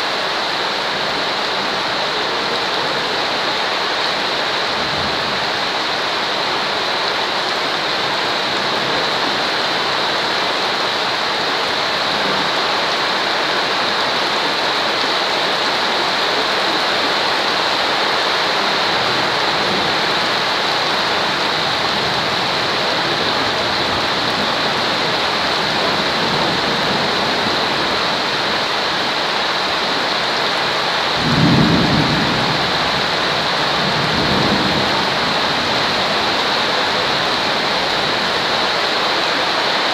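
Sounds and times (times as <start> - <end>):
steady rain: 0.0 - 39.9
low rumble of thunder: 31.1 - 36.0.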